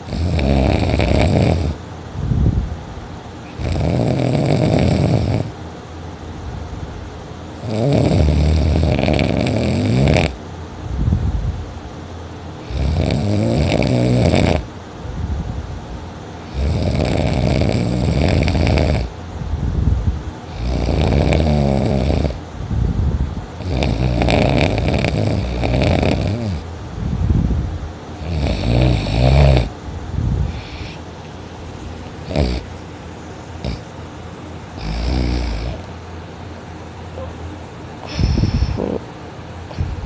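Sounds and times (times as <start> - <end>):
person snoring loudly: 0.0 - 1.8, 3.5 - 5.5, 7.6 - 10.4, 12.6 - 14.7, 16.4 - 19.1, 20.5 - 22.4, 23.6 - 26.6, 28.2 - 29.7, 32.2 - 32.7, 33.6 - 33.9, 34.8 - 35.9, 38.0 - 39.1
quiet breathing: 30.4 - 31.9, 38.0 - 39.0.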